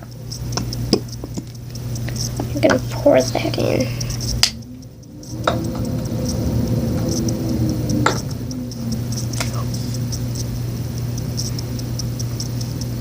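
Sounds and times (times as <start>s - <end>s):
steady low hum: 0.0s - 13.0s
sharp clicks: 4.0s - 13.0s.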